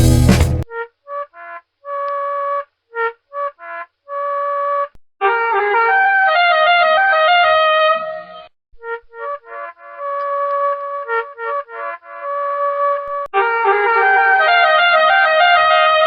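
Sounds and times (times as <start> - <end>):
bus horn tooting: 8.9 - 16.0.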